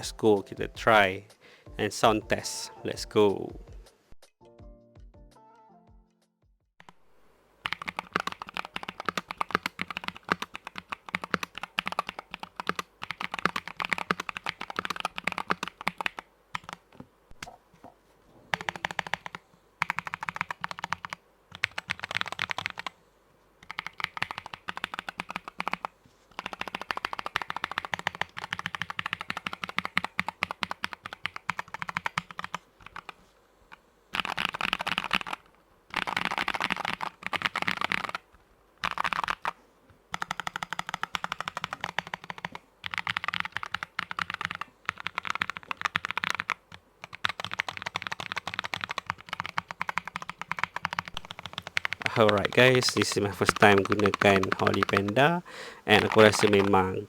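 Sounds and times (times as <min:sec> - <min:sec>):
keyboard key clacks: 0:56.0 - 0:56.9.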